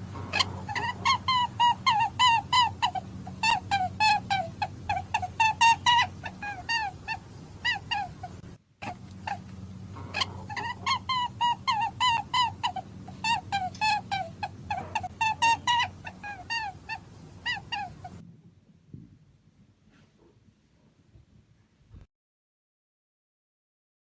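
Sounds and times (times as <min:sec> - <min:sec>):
rabbit squeaking: 0:00.0 - 0:18.2.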